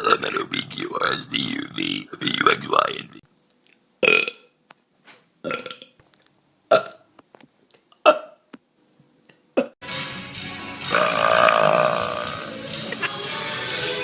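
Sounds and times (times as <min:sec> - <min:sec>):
person burping: 0:04.0 - 0:04.6, 0:05.4 - 0:06.0, 0:06.7 - 0:07.0, 0:08.0 - 0:08.5, 0:09.6 - 0:09.8, 0:10.9 - 0:12.6.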